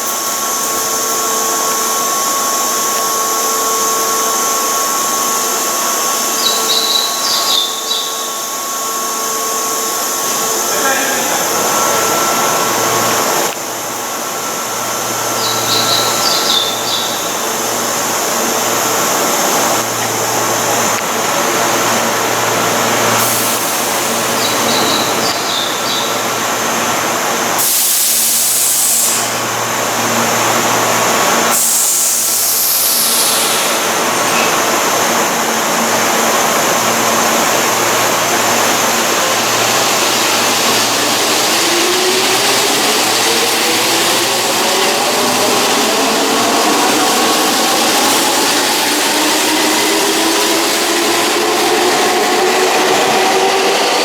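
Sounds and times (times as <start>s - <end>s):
electric train running hum: 0.0s - 54.0s
hissing air: 31.5s - 34.8s.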